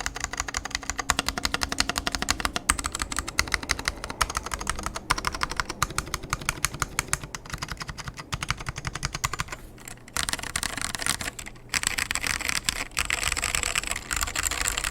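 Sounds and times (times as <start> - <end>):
mechanical keyboard typing: 0.0 - 14.9.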